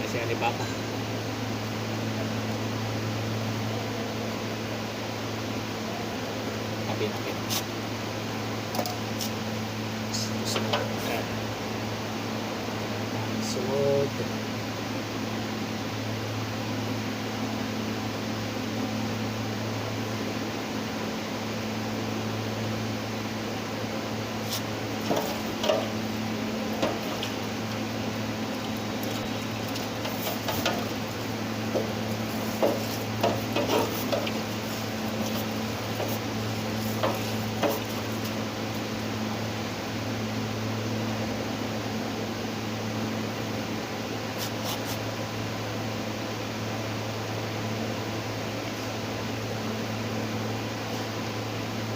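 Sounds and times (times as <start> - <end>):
low mechanical hum: 0.0 - 51.9.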